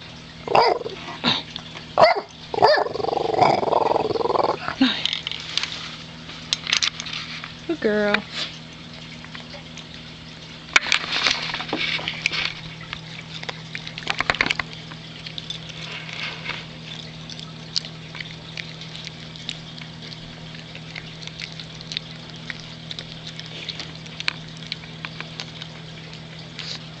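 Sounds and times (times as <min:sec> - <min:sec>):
steady low hum: 0:00.0 - 0:27.0
dog chewing a treat: 0:10.8 - 0:27.0.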